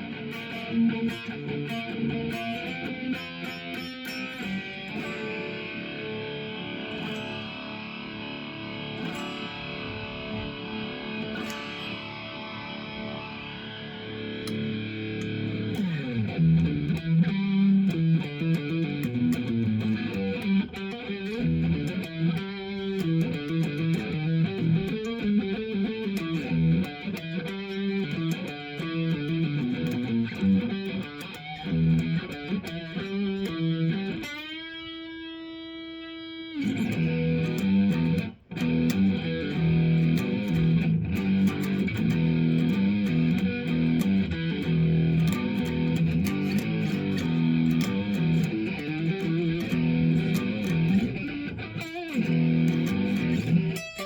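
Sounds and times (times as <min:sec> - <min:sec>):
electric guitar riffs: 0:00.0 - 0:54.0.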